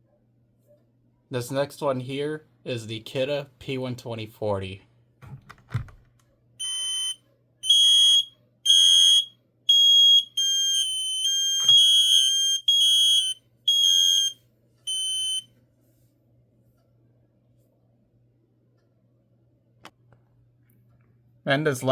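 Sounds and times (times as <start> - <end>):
other alarm tones: 6.6 - 15.5
smoke alarm beeping: 6.6 - 15.5.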